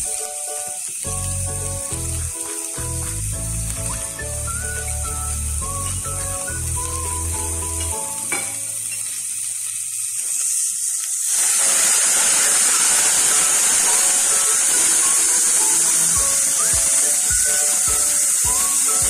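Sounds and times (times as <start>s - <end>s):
background music: 0.0s - 8.9s, 14.0s - 19.0s
food sizzling in a pan: 0.0s - 19.0s.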